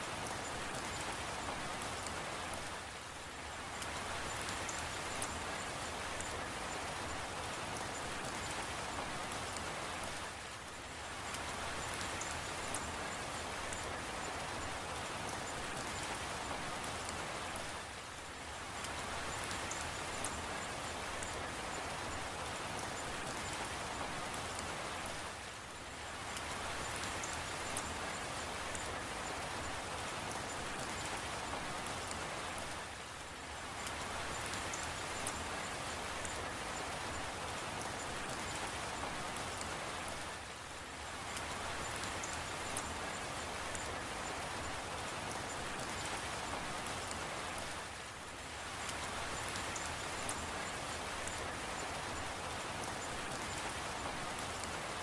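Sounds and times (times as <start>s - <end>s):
raindrop ticks: 7.8s - 10.2s, 15.3s - 17.7s.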